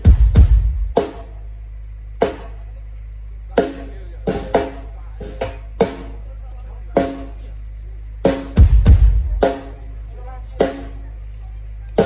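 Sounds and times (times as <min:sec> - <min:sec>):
bass drum boom: 0:00.0 - 0:01.0, 0:08.3 - 0:09.8
snare and tom strikes: 0:00.0 - 0:01.3, 0:02.2 - 0:02.6, 0:03.6 - 0:06.2, 0:07.0 - 0:07.4, 0:08.3 - 0:09.8
steady low hum: 0:00.0 - 0:12.0.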